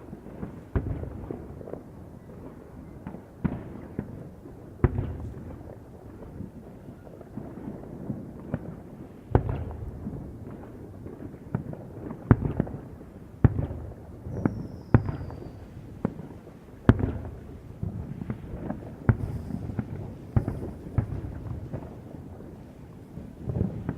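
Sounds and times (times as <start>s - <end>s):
fireworks bangs with rumble: 0.4s - 1.9s, 3.0s - 6.4s, 7.4s - 23.9s
falling firework whistle: 14.3s - 15.8s, 19.1s - 22.2s.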